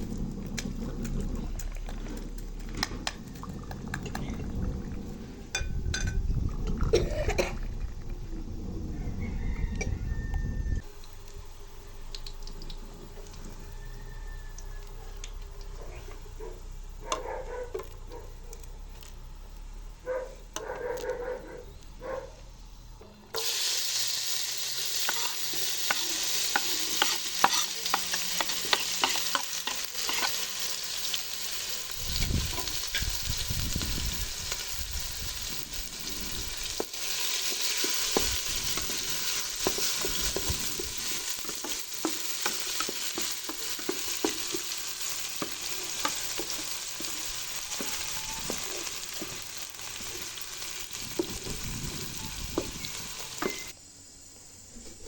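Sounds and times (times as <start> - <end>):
food sizzling in hot oil: 23.3 - 53.8
utensil stirring in a pan: 23.4 - 33.4, 34.3 - 53.7.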